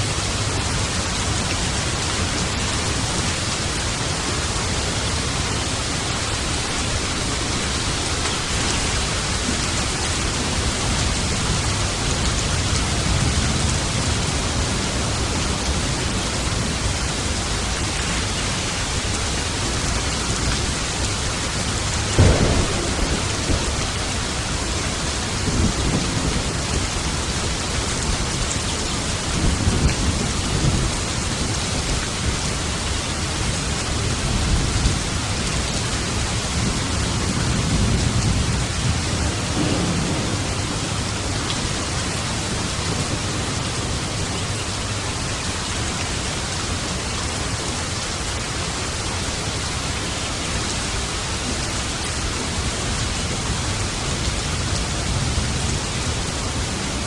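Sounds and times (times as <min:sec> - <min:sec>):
heavy rain: 0:00.0 - 0:57.0
rolling thunder rumbles: 0:07.0 - 0:32.5, 0:33.4 - 0:45.1
thunder clap: 0:22.0 - 0:27.2, 0:37.5 - 0:44.3.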